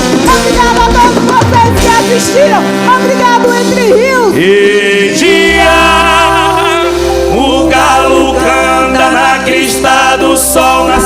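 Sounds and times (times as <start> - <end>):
held chords: 0.0 - 11.0
wavering sung voices: 4.4 - 11.0.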